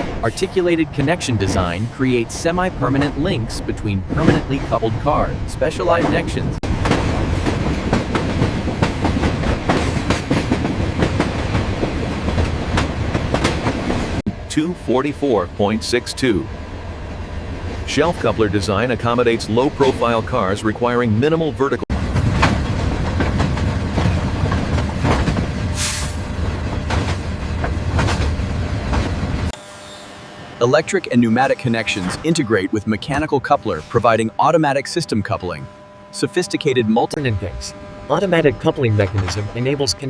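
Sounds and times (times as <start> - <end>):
wheels clacking over rail joints: 0.0 - 14.7, 21.9 - 29.5
train rumbling on track: 0.0 - 40.0.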